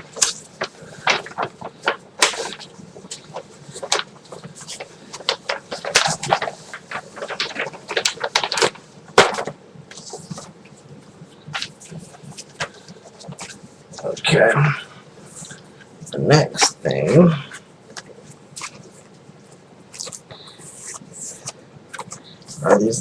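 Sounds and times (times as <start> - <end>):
paper rustling and crinkling: 0.0 - 14.4, 17.9 - 23.0.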